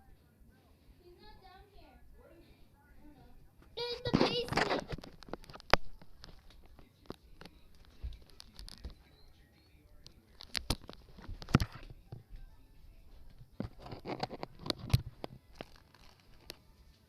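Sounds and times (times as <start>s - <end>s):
rustling: 3.6s - 17.0s.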